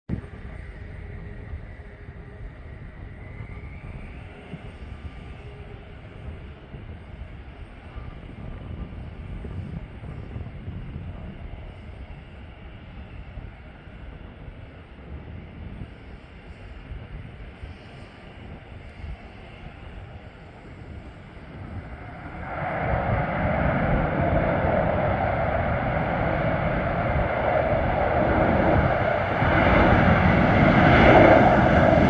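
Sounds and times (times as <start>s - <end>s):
jet engines running: 0.1s - 32.0s.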